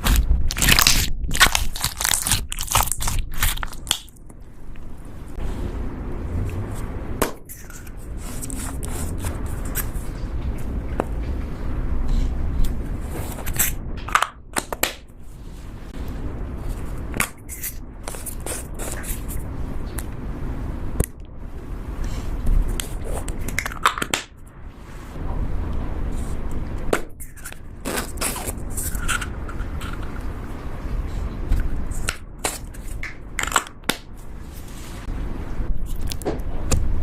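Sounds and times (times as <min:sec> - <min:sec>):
slime crackling and squishing: 0:00.0 - 0:04.3.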